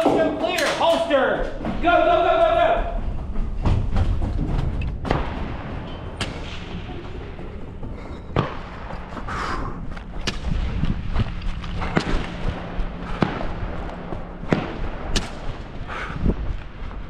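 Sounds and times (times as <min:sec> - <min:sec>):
low rumble of camera movement: 0:01.4 - 0:17.0
gunshots: 0:05.0 - 0:06.9, 0:10.2 - 0:15.9.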